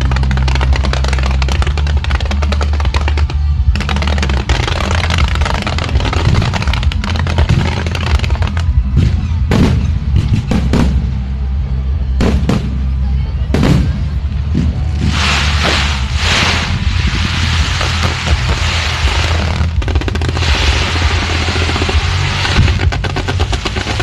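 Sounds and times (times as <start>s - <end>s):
fireworks bangs: 0.0s - 11.3s, 12.2s - 24.0s
firecrackers crackling: 0.0s - 11.5s, 12.2s - 24.0s
deep rumble: 0.0s - 24.0s
hissing crackling burst: 14.9s - 24.0s.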